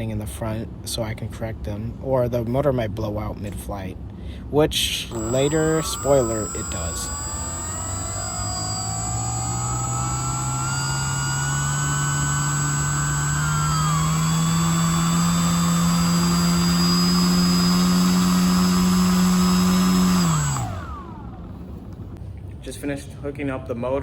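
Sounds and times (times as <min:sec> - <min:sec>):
electric motor spinning propeller: 0:05.1 - 0:22.2.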